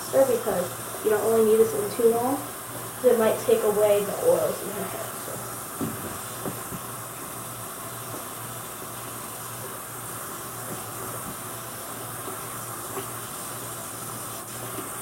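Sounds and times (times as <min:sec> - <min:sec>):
tap water running into sink: 0:05.6 - 0:15.0.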